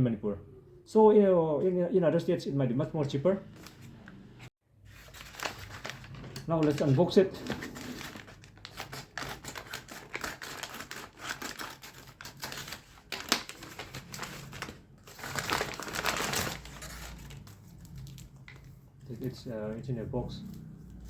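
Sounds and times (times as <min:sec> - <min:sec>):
packaging crinkling: 0:05.0 - 0:19.4.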